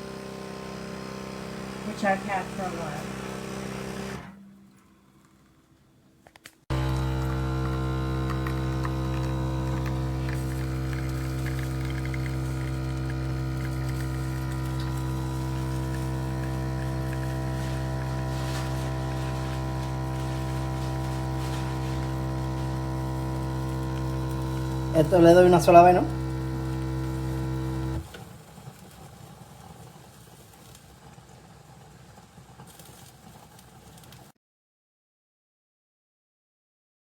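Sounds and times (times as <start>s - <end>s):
espresso machine pump humming: 0.0s - 4.6s, 6.7s - 28.2s.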